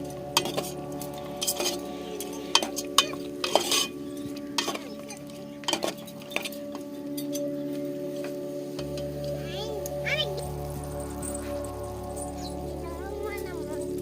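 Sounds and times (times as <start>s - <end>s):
light sizzle: 0.0s - 14.0s
utensil clinking and scraping pan: 0.3s - 7.6s.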